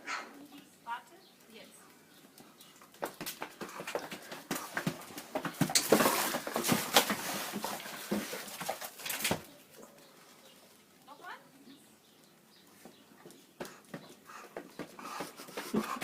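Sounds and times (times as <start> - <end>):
dog scuffling and clicking: 2.2 - 9.5.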